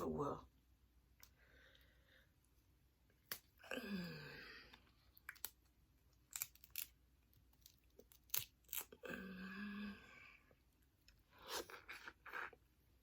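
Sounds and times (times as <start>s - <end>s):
shells cracking and tearing: 5.2s - 9.0s.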